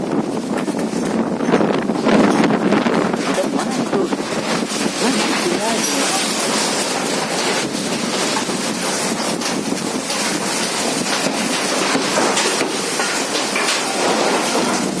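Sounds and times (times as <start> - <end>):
rattles and knocks: 0.0 - 15.0
strong storm wind: 0.0 - 15.0.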